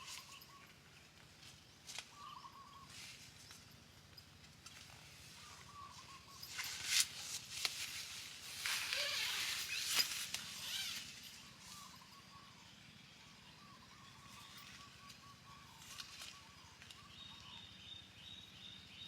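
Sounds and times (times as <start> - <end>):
rustling and crackling: 2.9 - 11.7.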